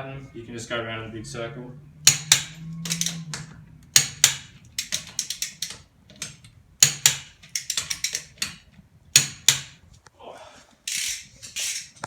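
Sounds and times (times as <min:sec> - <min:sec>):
light ratchet clicks: 0:02.0 - 0:09.8, 0:10.9 - 0:12.0
torque wrench clicking: 0:02.0 - 0:09.8, 0:10.9 - 0:12.0.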